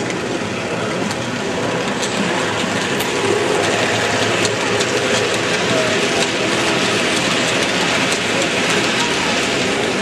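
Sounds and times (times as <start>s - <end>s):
model trains running: 0.0s - 10.0s.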